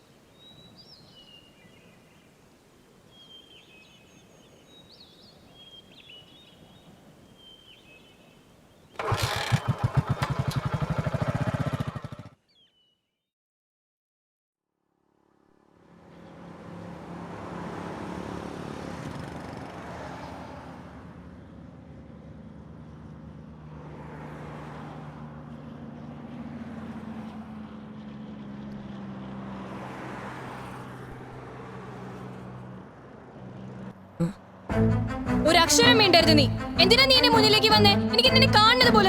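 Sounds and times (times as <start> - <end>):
vehicle engine running: 9.0 - 12.4.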